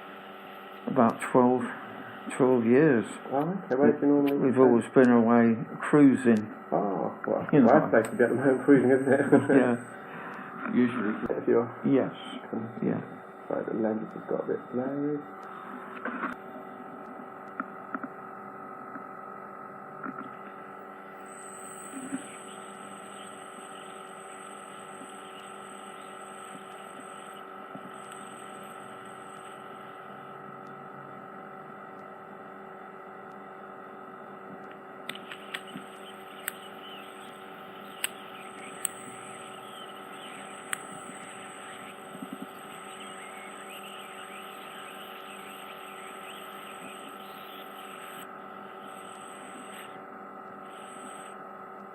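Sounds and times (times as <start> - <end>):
suction machine humming and hissing: 0.0 - 51.9
clicks and crackles of suction: 4.2 - 5.2, 15.2 - 51.9.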